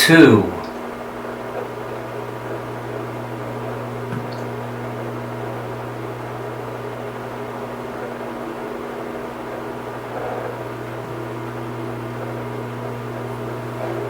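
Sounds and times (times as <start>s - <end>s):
low hum: 1.9s - 7.5s.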